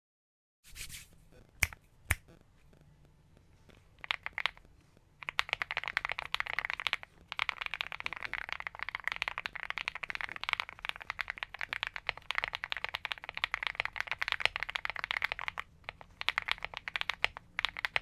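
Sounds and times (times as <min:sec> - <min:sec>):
mechanical keyboard typing: 0:04.0 - 0:04.6, 0:05.2 - 0:18.0.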